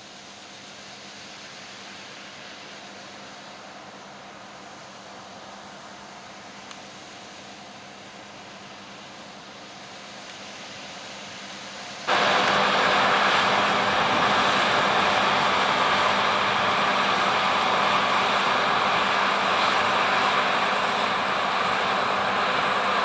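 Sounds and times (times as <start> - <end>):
combine harvester running: 11.9 - 23.0.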